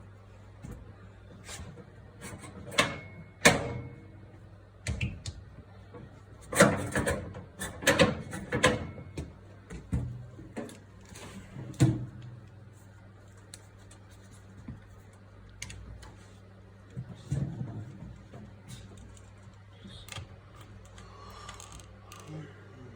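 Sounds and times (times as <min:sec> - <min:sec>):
steady low hum: 0:00.0 - 0:22.9.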